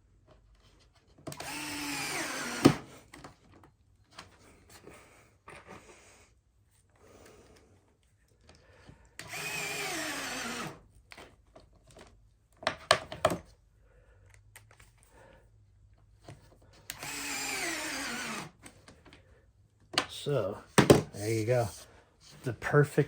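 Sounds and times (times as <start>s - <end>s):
drill cutting into wood: 1.3s - 3.0s, 9.2s - 10.8s, 16.9s - 18.6s.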